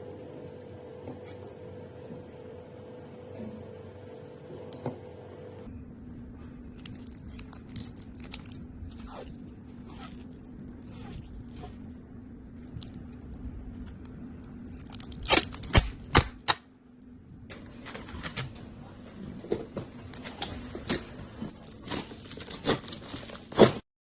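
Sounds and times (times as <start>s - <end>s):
steady low hum: 0.0s - 23.8s.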